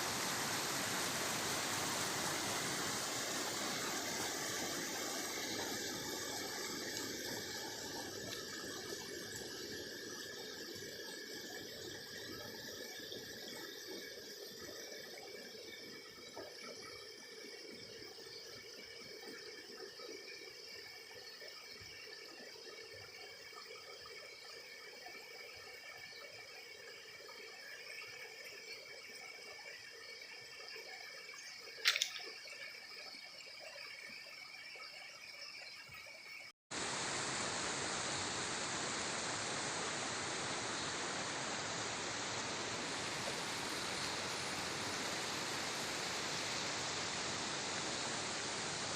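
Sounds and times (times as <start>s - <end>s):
loud rush of water: 0.0s - 7.9s, 36.8s - 48.9s
flowing water: 0.0s - 48.9s
sharp click: 31.8s - 32.3s.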